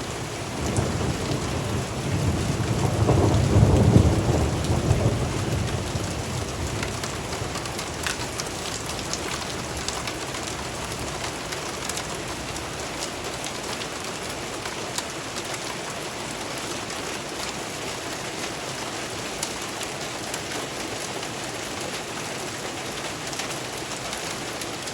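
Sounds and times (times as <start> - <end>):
rain falling: 0.0 - 24.9
low thunder rumble: 0.4 - 9.9
hail ticks: 2.8 - 15.6.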